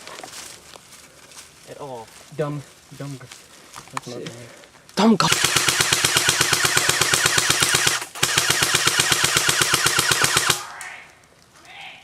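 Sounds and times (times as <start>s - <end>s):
airsoft rifle firing: 5.2s - 11.1s.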